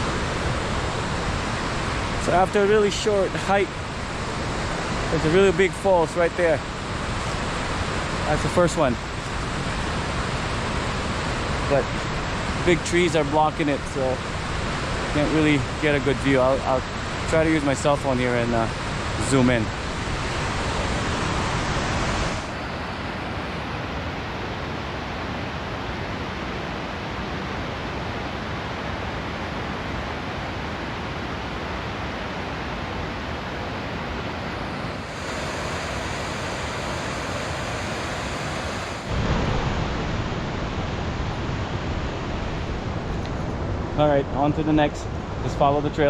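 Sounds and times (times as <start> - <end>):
waterfall rushing: 0.0 - 23.6, 30.1 - 43.1.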